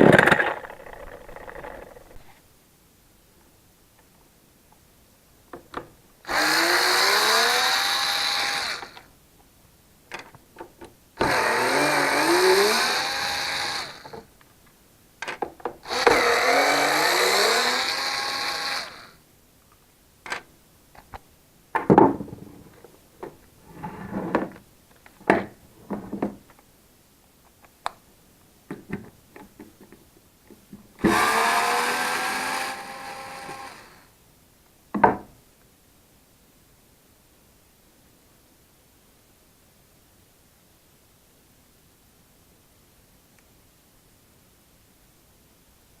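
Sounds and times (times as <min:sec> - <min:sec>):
small motor running: 0:06.3 - 0:09.0, 0:11.2 - 0:14.1, 0:15.9 - 0:19.1, 0:31.0 - 0:34.0.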